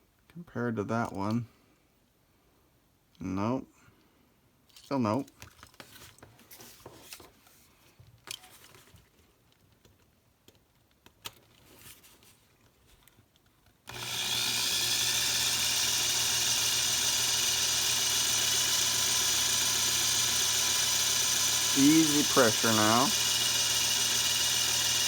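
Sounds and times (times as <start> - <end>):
power drill drilling metal: 13.9 - 25.0.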